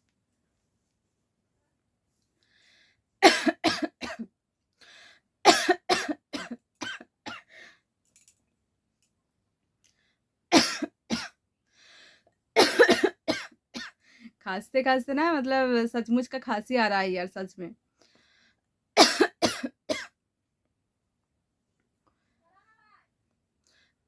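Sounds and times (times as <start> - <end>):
woman coughing: 3.2 - 4.3, 5.5 - 7.4, 10.5 - 11.4, 12.6 - 14.0, 19.0 - 20.2
short breaths drawn: 11.7 - 12.3, 18.0 - 18.6.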